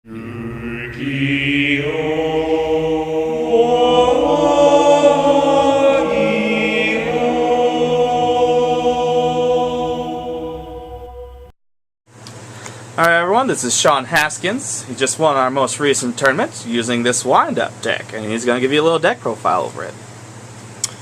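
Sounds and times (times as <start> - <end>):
choir-like chanting: 0.1 - 11.5.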